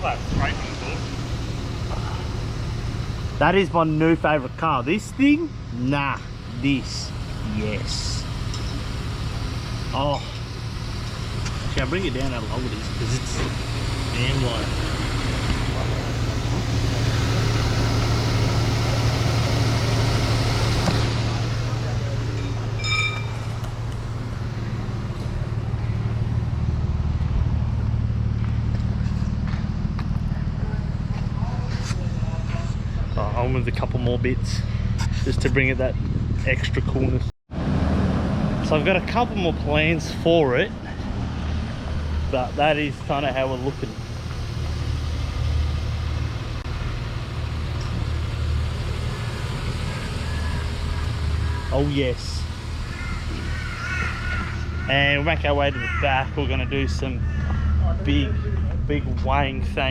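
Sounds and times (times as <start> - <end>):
car engine idling: 0.0 - 59.9
short high beep: 22.8 - 23.4.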